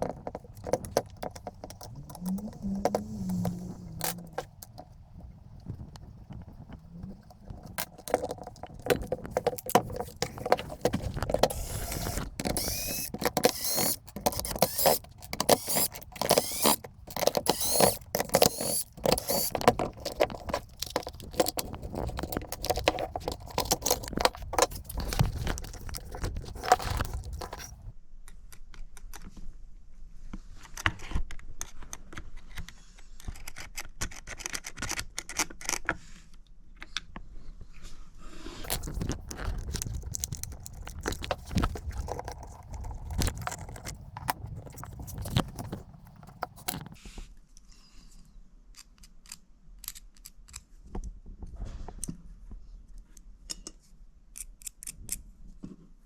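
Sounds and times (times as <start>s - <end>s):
small hard parts clicking and scraping: 0.0s - 27.9s, 38.6s - 47.0s.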